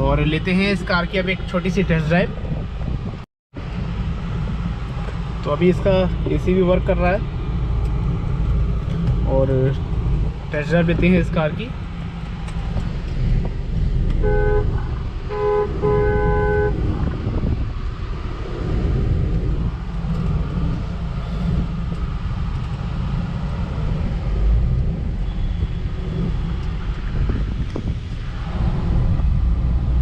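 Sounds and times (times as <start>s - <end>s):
car engine rumble: 0.0s - 30.0s
car horn honking: 14.2s - 16.8s.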